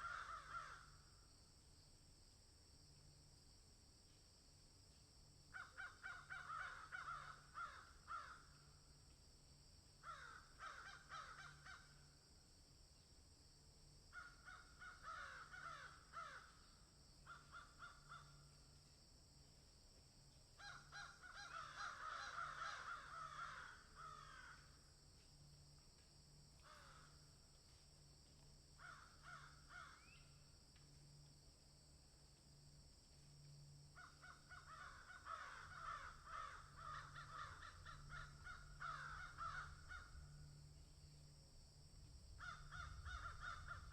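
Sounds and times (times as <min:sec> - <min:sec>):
crows cawing: 0:00.0 - 0:01.0, 0:05.5 - 0:08.7, 0:10.0 - 0:12.1, 0:14.1 - 0:18.6, 0:20.6 - 0:24.9, 0:26.6 - 0:27.3, 0:28.8 - 0:30.2, 0:34.0 - 0:40.4, 0:42.4 - 0:43.9
steady high-pitched hiss: 0:00.0 - 0:43.9.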